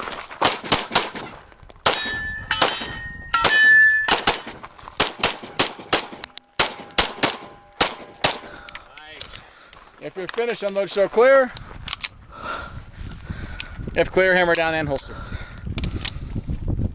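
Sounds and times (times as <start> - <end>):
rapid pistol fire: 0.4 - 1.3, 4.1 - 8.6
steel targets ringing: 1.9 - 4.3.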